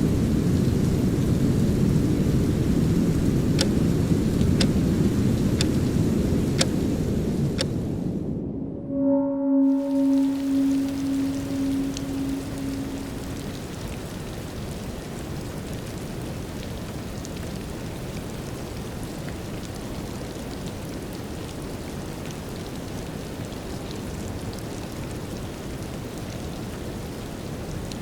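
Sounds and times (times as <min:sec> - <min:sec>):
light rain: 0:00.0 - 0:08.5, 0:09.7 - 0:28.0
deep rumble: 0:00.6 - 0:13.9
held low tone: 0:08.3 - 0:13.8.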